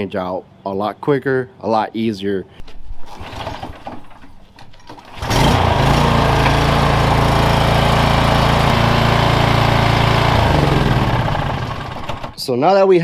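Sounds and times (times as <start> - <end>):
lawn mower engine running: 3.1 - 12.4.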